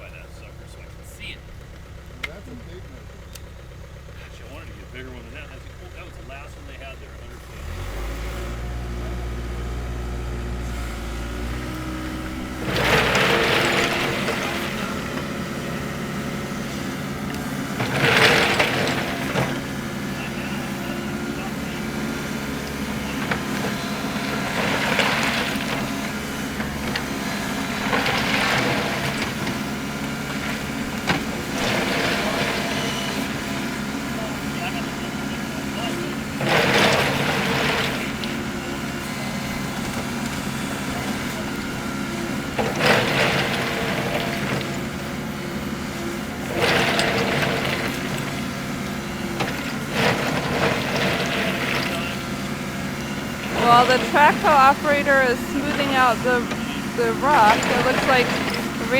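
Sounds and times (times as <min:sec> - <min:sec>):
excavator engine running: 0:00.1 - 0:58.9
gravel scraping and sliding: 0:07.6 - 0:33.6, 0:53.1 - 0:58.9
bucket scraping crushed rock: 0:12.3 - 0:15.4, 0:53.5 - 0:58.9.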